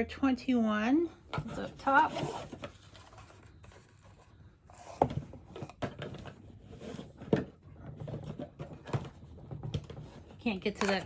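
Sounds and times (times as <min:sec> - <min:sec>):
cardboard box rustling: 0:01.4 - 0:07.4.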